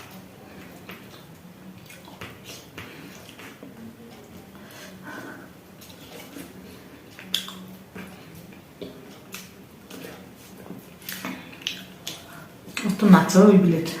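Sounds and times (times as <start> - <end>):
wet chewing and lip smacking: 0.1 - 4.4, 7.1 - 10.2, 11.0 - 12.9.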